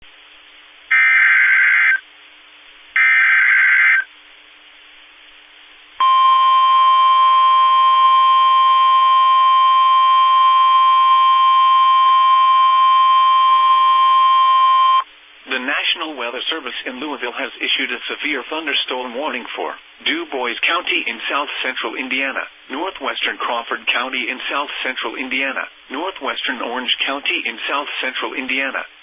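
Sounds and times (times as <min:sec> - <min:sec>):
buzzy digital data tones: 0:00.9 - 0:02.0
steady alarm tone: 0:00.9 - 0:02.0, 0:03.0 - 0:04.1, 0:06.0 - 0:15.0.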